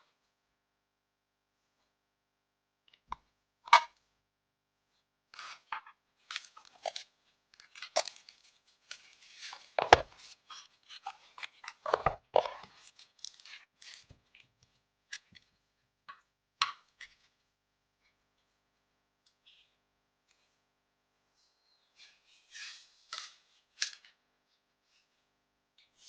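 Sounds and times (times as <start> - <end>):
packaging crinkling and rustling: 6.3 - 14.1.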